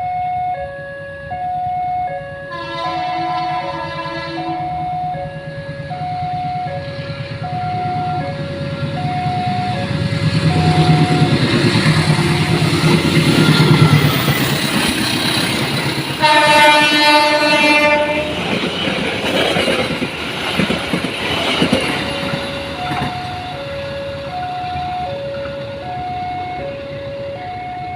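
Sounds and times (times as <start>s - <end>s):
level crossing two-tone alarm: 0.0s - 2.9s, 4.5s - 12.9s, 22.1s - 27.9s
locomotive horn: 0.4s - 11.4s, 16.2s - 18.6s
train wheels clattering: 6.9s - 23.6s.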